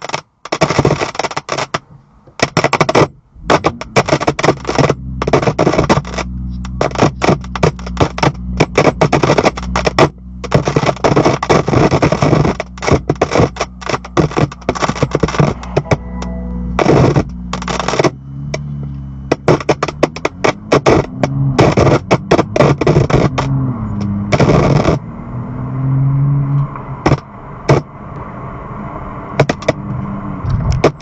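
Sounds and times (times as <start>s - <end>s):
speakers crackling and screeching: 0.0s - 31.0s
steady low hum: 3.0s - 24.4s.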